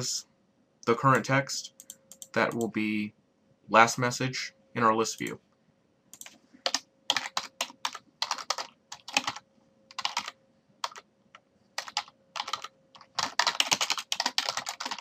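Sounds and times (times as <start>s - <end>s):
computer keyboard typing: 1.1s - 2.7s, 6.1s - 11.1s, 11.8s - 15.0s.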